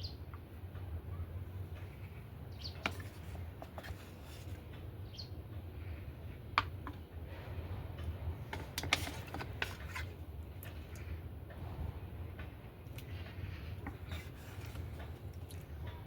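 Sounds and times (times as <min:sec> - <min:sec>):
high bird chirp: 0:02.5 - 0:02.8.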